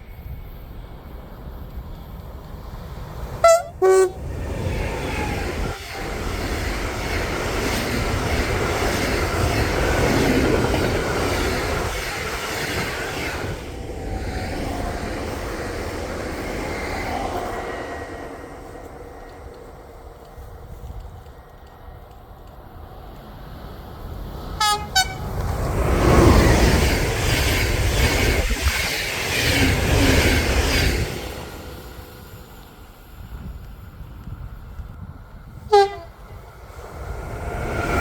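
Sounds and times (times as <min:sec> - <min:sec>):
train wheels rumbling on rail: 0:00.0 - 0:38.0
train horn blasts: 0:03.4 - 0:04.3, 0:05.2 - 0:06.8, 0:24.6 - 0:25.5, 0:35.6 - 0:36.4.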